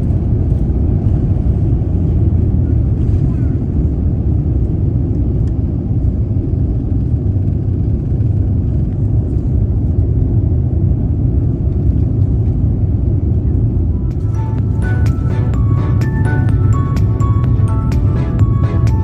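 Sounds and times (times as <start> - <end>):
airplane cabin rumble: 0.0 - 19.0.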